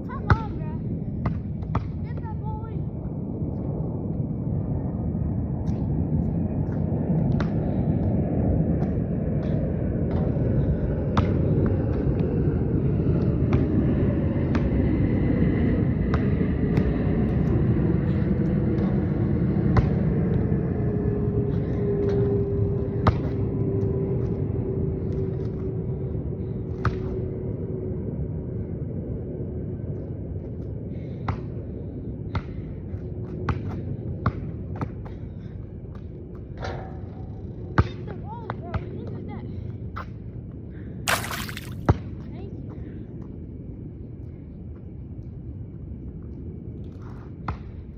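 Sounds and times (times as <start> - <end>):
low rumble: 0.0 - 14.4
steady low rumble: 0.0 - 38.3.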